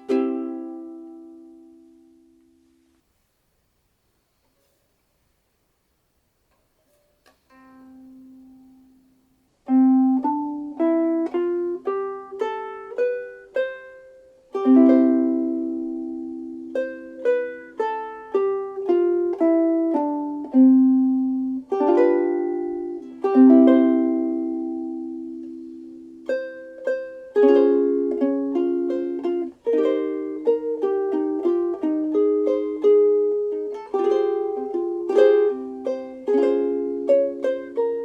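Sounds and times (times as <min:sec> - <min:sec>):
ukulele plucked notes: 0:00.0 - 0:02.8, 0:06.9 - 0:38.0
ukulele strummed chords: 0:00.0 - 0:02.9, 0:06.9 - 0:38.0.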